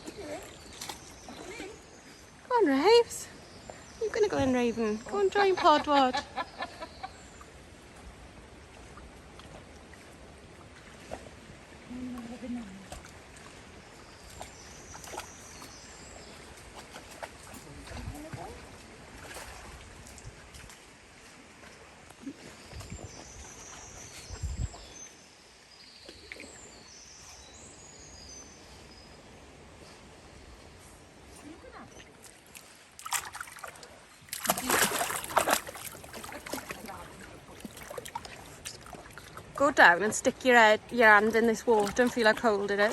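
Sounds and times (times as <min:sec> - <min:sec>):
flowing stream and waterfall: 0:00.0 - 0:42.9
light splashes: 0:08.7 - 0:24.9, 0:31.3 - 0:42.9
water rushing: 0:31.4 - 0:42.9.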